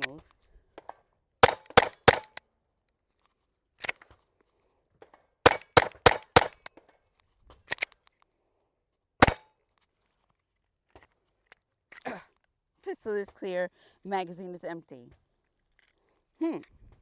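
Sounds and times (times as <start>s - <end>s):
pistol shots: 1.4s - 2.4s, 5.5s - 6.7s.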